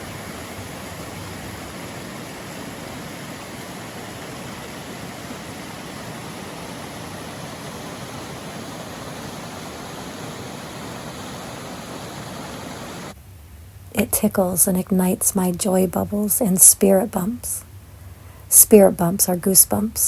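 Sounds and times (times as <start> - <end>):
creek rushing over rocks: 0.0 - 13.2.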